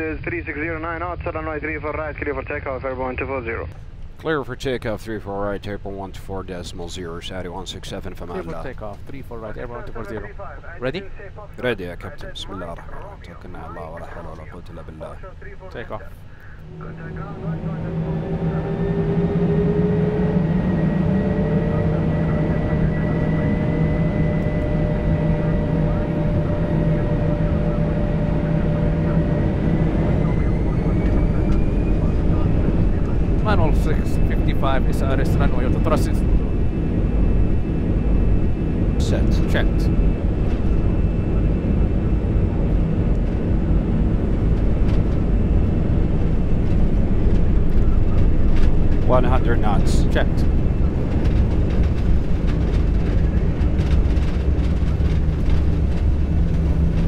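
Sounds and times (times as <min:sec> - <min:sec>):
low rumble: 0:03.6 - 0:57.0
jet engines spooling up: 0:16.2 - 0:57.0.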